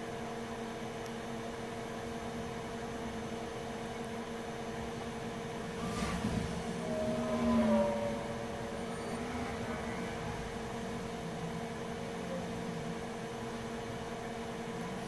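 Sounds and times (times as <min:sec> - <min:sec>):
electrical hum and fan hiss: 0:00.0 - 0:15.0
faint wavering tone: 0:04.6 - 0:15.0.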